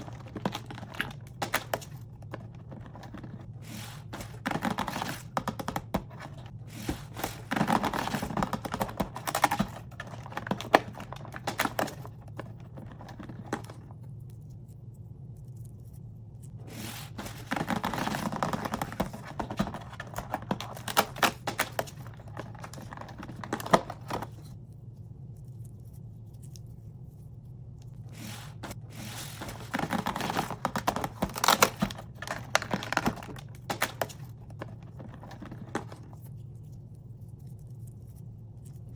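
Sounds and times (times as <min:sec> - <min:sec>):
packaging rustling and crinkling: 0:00.0 - 0:14.0, 0:16.5 - 0:24.5, 0:28.0 - 0:36.2.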